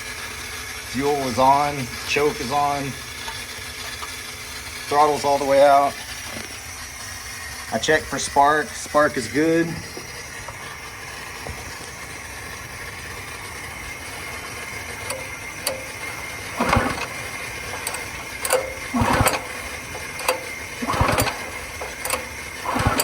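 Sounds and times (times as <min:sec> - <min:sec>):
engine recoil pull-start: 0:00.0 - 0:23.0
engine turning over: 0:00.0 - 0:23.0.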